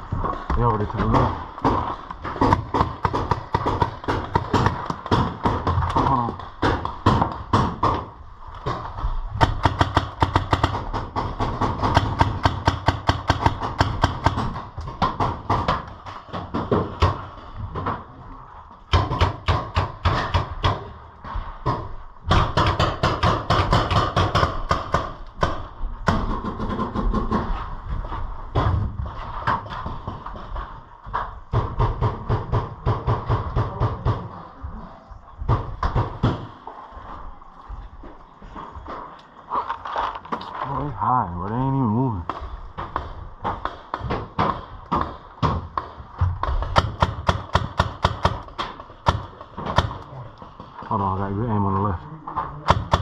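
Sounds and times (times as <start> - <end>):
paintball markers firing: 2.2 - 8.0.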